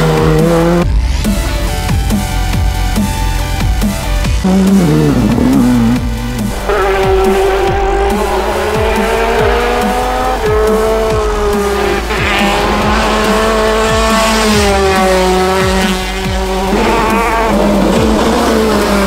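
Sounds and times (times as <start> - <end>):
rally car engine revving: 0.0 - 19.0.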